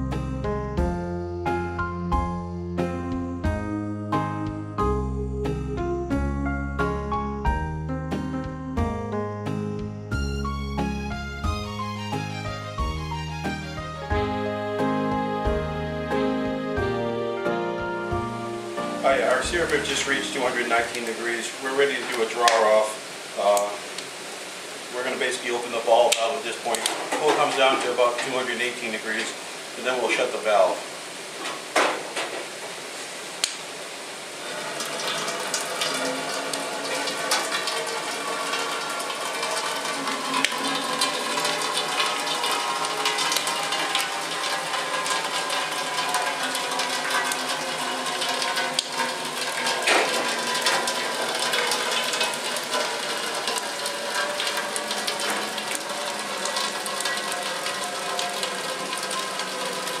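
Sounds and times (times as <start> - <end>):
sap boiling hard: 18.1 - 60.0.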